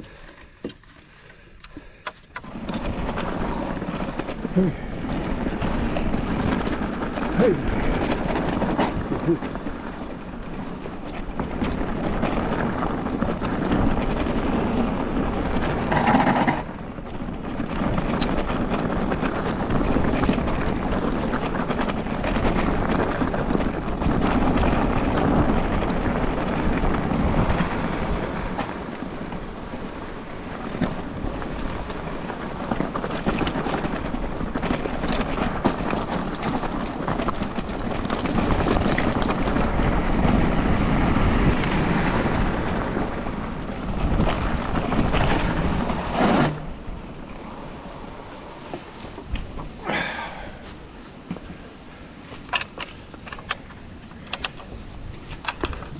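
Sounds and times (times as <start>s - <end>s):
tyres rumbling on rough ground: 0.0s - 55.9s
wind on microphone: 2.4s - 55.9s.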